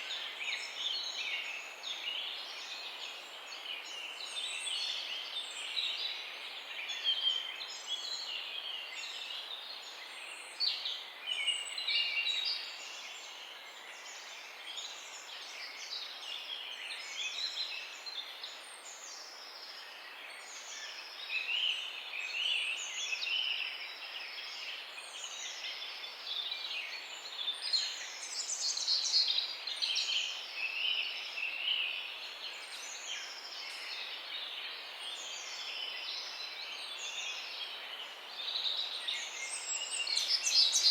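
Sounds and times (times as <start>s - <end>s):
faint steady hiss: 0.0s - 40.9s
songbirds chirping and singing: 18.9s - 40.9s.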